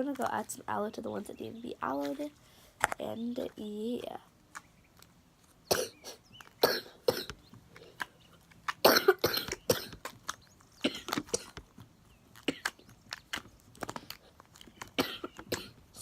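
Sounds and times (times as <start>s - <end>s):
girl coughing: 5.7s - 7.3s, 8.8s - 10.0s, 15.0s - 15.8s.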